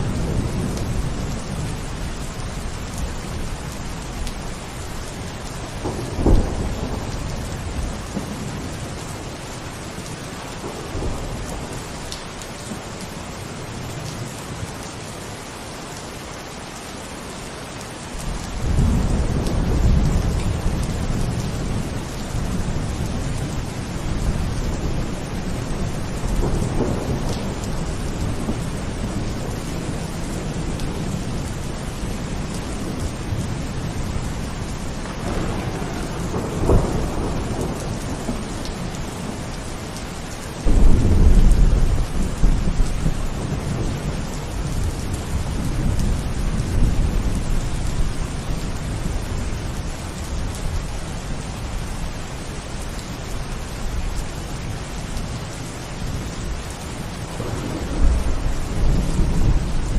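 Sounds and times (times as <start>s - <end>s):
steady rain: 0.0s - 59.9s
thunder rolling: 5.8s - 8.4s, 34.8s - 39.5s, 40.6s - 48.1s, 57.3s - 59.9s
thunder clap: 35.0s - 39.3s, 57.3s - 59.9s.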